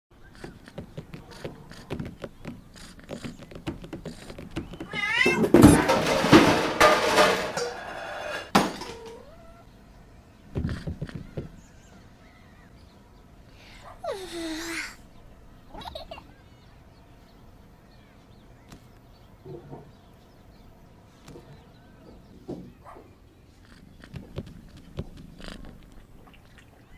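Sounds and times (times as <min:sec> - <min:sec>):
cat meowing: 0:04.8 - 0:05.6, 0:08.9 - 0:09.7.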